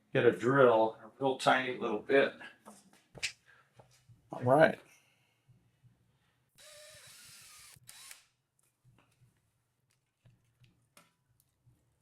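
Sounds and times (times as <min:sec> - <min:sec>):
small electric drill whining: 0:06.6 - 0:08.3.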